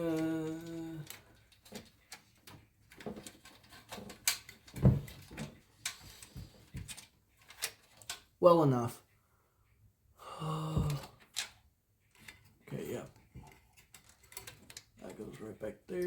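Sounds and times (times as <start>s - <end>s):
person humming: 0.0s - 1.2s, 10.2s - 11.2s
computer parts clicking and knocking: 13.2s - 15.3s.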